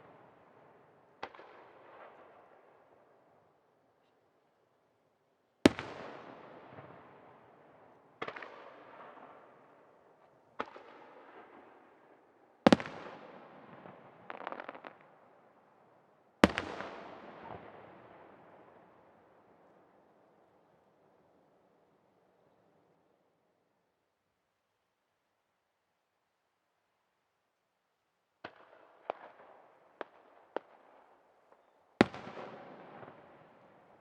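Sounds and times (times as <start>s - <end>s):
crackling firework pops: 8.2s - 8.7s.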